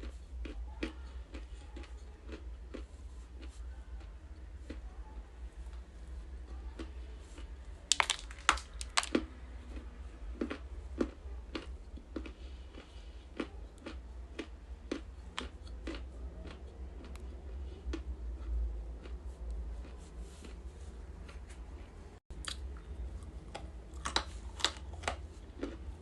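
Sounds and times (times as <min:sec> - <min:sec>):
crunchy chewing: 0:00.0 - 0:26.0
clay snapping: 0:07.9 - 0:09.2.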